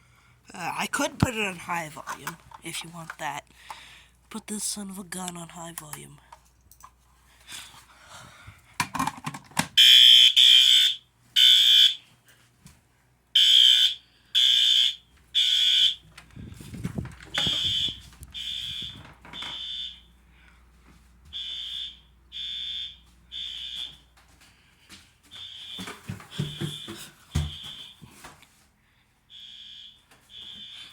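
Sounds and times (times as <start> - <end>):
fire alarm horn blasts: 9.8 - 12.1, 13.4 - 16.0, 17.3 - 20.2, 21.3 - 24.1, 25.3 - 28.0, 29.3 - 30.9.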